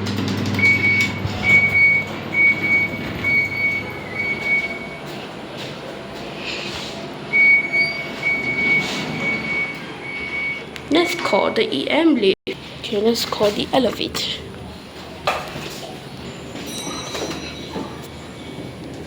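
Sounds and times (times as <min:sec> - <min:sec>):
lift buzzer beeping: 0:00.1 - 0:05.3, 0:07.1 - 0:11.3.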